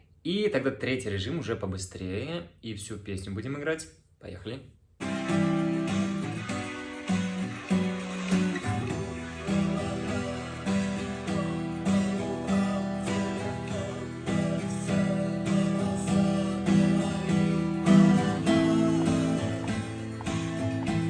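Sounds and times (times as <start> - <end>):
guitar chords strummed: 5.0 - 21.0.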